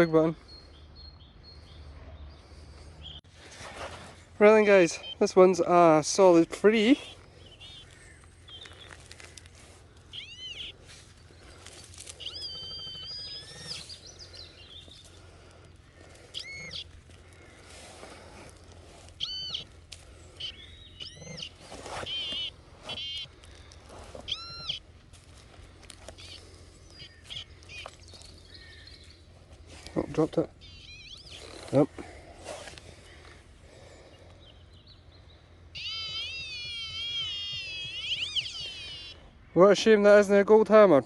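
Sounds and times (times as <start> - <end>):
digging in soil: 2.1 - 5.5, 6.2 - 30.5, 31.2 - 34.4
bird whistled calls: 7.0 - 8.9, 10.1 - 10.8, 12.2 - 14.8, 16.4 - 16.9, 19.2 - 19.7, 20.4 - 23.3, 24.3 - 24.8, 30.6 - 31.7, 35.7 - 39.2.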